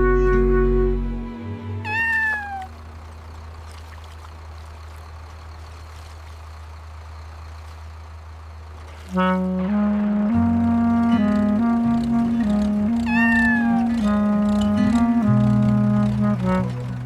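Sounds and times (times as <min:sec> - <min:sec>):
cat meowing: 0:01.8 - 0:02.8, 0:13.0 - 0:14.1.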